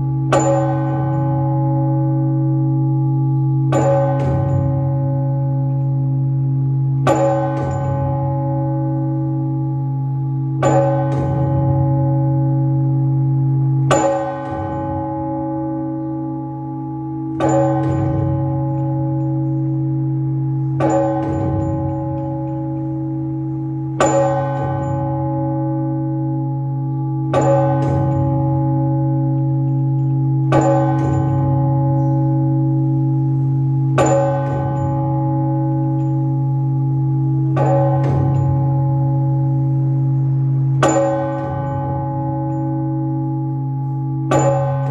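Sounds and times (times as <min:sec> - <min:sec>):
church bell strikes: 0:00.0 - 0:44.9
deep bell humming: 0:00.0 - 0:44.9.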